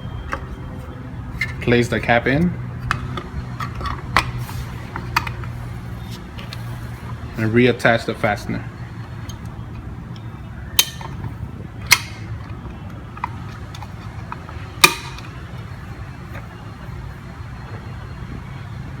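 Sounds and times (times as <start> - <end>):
steady low hum: 0.0 - 19.0
sharp plastic clicks: 9.2 - 15.7.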